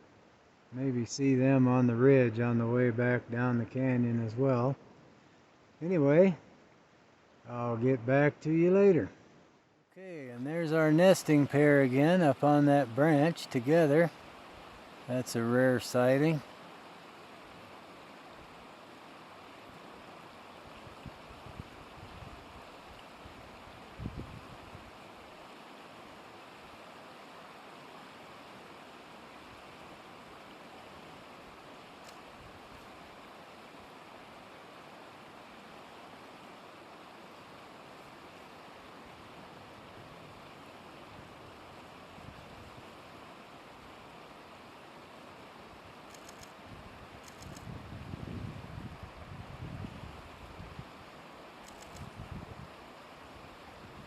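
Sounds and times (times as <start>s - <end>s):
river water rushing: 10.0s - 47.5s, 48.9s - 54.0s.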